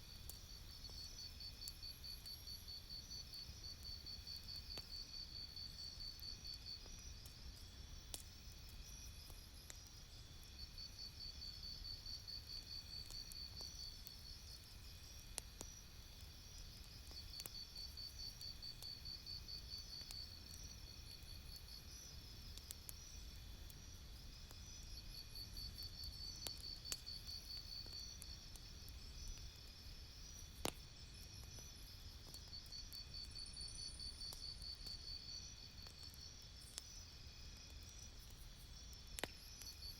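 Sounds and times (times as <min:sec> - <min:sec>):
campfire crackling: 0:00.1 - 0:39.9.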